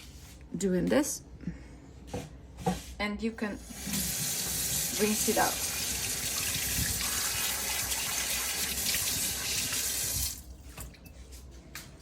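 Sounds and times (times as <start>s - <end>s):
tap water running into sink: 3.7s - 10.9s.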